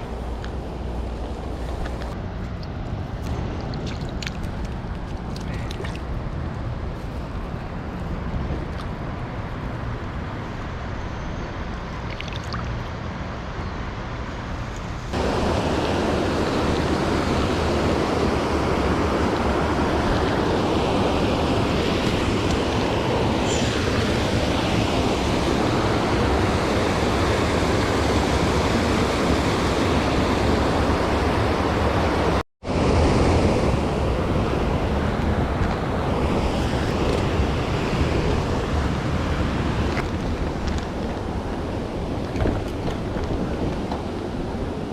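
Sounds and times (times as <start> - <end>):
wind on microphone: 14.7 - 44.9
stream water rushing: 15.1 - 42.3.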